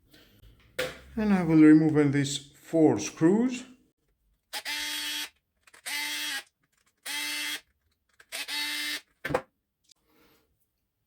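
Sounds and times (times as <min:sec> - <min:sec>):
electric screwdriver running: 0:04.6 - 0:07.6, 0:08.2 - 0:09.1.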